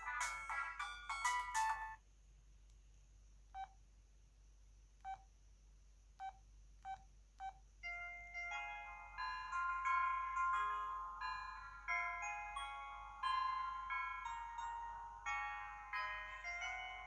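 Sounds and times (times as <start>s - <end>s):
phone ringtone melody: 0.0s - 2.0s, 8.0s - 17.0s.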